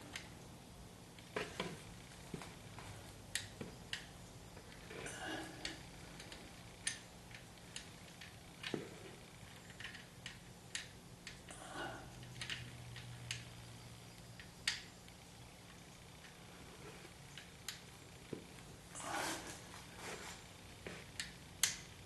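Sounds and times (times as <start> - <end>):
faint steady hum: 0.0 - 22.0
small parts and tools clicking: 3.3 - 17.9.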